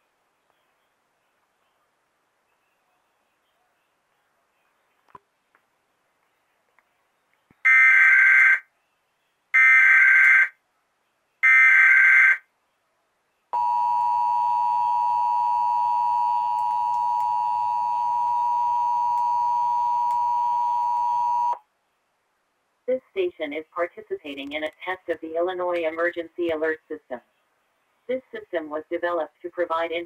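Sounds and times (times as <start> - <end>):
two-tone attention signal: 13.6 - 21.6.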